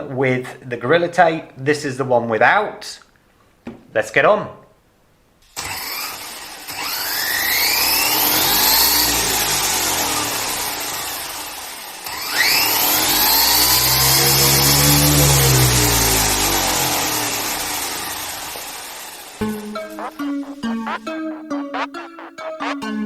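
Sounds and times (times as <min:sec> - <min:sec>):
toy car electric motor whining: 0:05.6 - 0:19.4.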